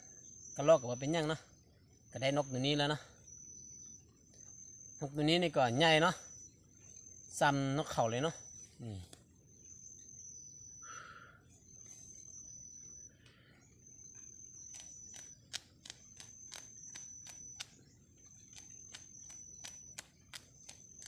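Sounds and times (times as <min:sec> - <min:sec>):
insect high-pitched trill: 0:00.0 - 0:21.0
sharp clicks: 0:14.6 - 0:21.0.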